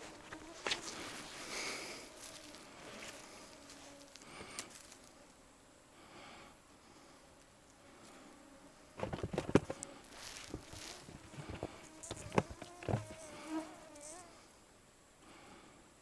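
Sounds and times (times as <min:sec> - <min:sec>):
flying insect buzzing: 0:00.0 - 0:05.5, 0:07.0 - 0:14.5
sharp knocks and rustles: 0:09.0 - 0:13.4.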